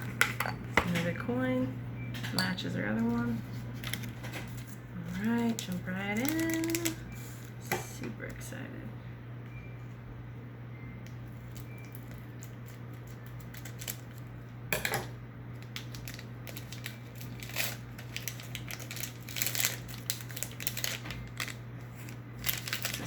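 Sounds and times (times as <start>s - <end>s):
steady low hum: 0.0s - 23.0s
foil wrapper crinkling and tearing: 3.7s - 7.6s, 11.4s - 14.4s, 15.5s - 23.0s.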